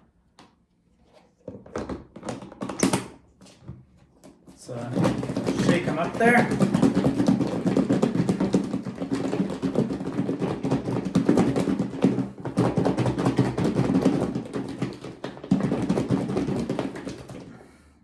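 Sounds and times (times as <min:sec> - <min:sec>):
food pieces rattling in container: 0:04.9 - 0:17.0.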